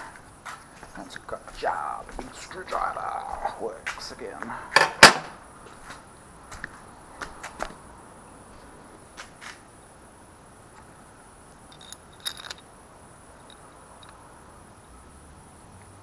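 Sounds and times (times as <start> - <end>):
crickets chirring: 0.0 - 16.0
tools and engine parts clicking: 11.5 - 12.7.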